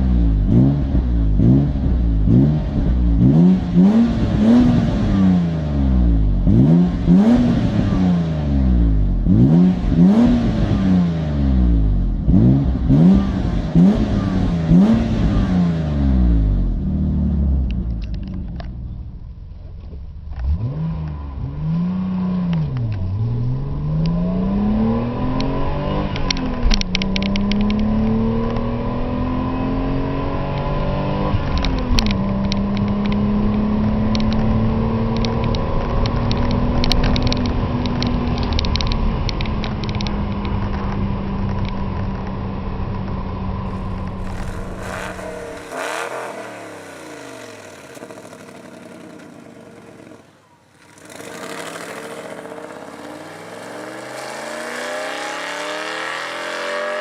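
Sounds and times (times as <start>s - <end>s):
car engine accelerating hard: 0.0s - 18.4s, 43.4s - 57.0s.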